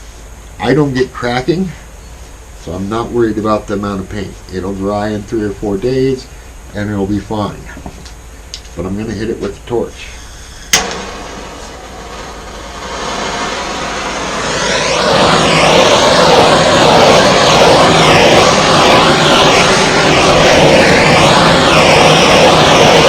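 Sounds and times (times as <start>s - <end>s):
torch flame hissing: 0.0s - 23.0s
torch lighting click: 10.7s - 13.3s.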